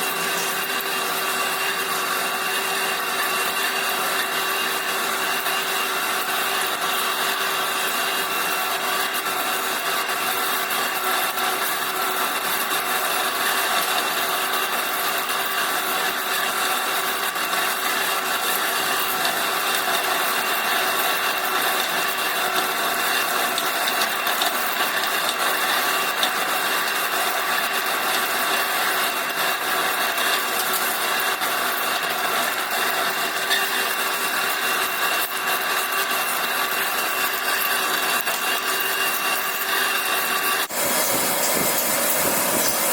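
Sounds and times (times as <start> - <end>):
machine hum: 0.0 - 2.1, 40.6 - 42.9
lathe cutting scraping noise: 0.0 - 42.9.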